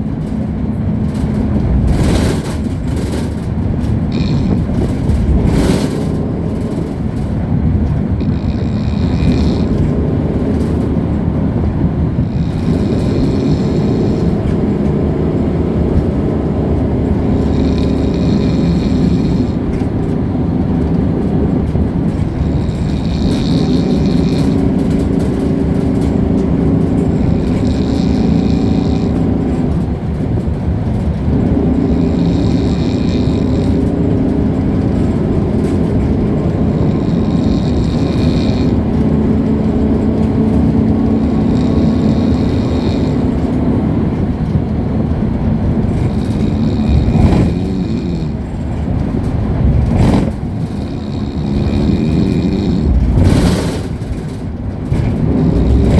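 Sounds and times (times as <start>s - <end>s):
diesel engine drone: 0.0s - 55.9s
road rumble: 0.0s - 55.9s
person snoring: 1.6s - 3.2s, 4.1s - 6.1s, 8.2s - 10.3s, 12.2s - 14.9s, 17.2s - 19.9s, 22.1s - 25.4s, 27.2s - 29.4s, 31.7s - 33.9s, 36.6s - 38.8s, 41.2s - 43.6s, 45.9s - 48.5s, 49.8s - 54.0s, 55.2s - 55.9s.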